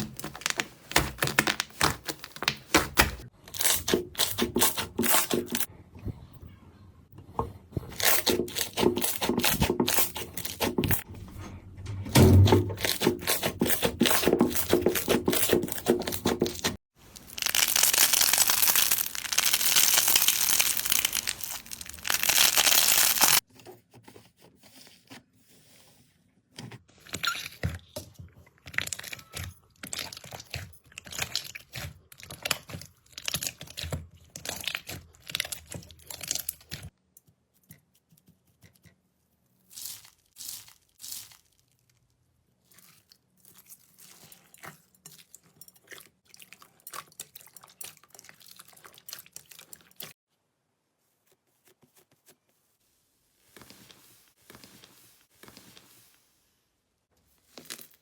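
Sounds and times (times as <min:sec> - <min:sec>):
slime crackling and popping: 0:17.1 - 0:23.4.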